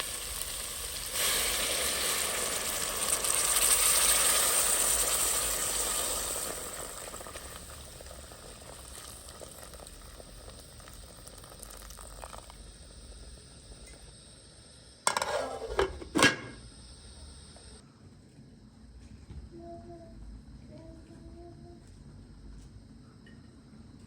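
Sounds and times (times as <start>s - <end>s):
food bubbling in a pot: 0.0s - 14.3s
pots and utensils clinking: 15.1s - 16.6s.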